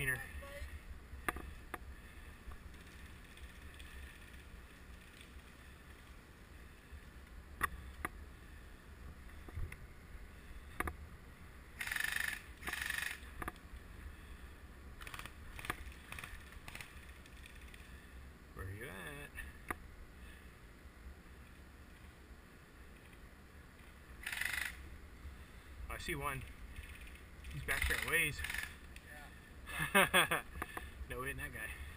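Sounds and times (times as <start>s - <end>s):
rustling: 1.4s - 8.0s.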